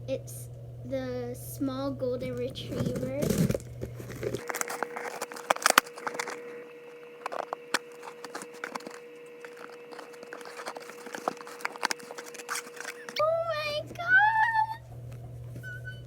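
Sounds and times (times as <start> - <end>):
faint steady hum: 0.0 - 16.0
plastic and cardboard crinkling: 2.3 - 13.2.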